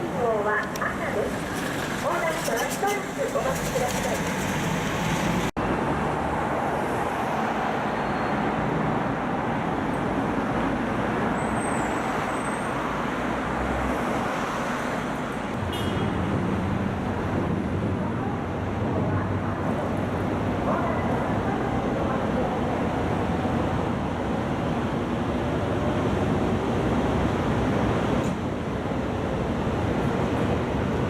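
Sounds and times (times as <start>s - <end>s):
road traffic noise: 0.0s - 31.0s.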